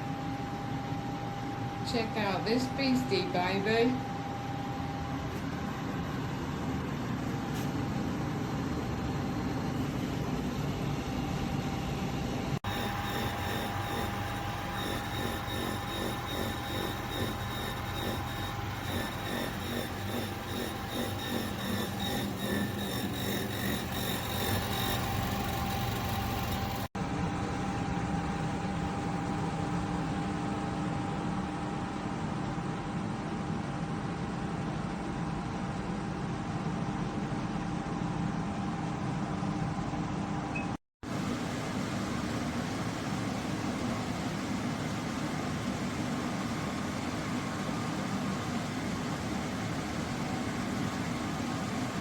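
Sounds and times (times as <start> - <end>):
air conditioner humming: 0.0 - 30.0
faint steady whine: 8.3 - 26.9.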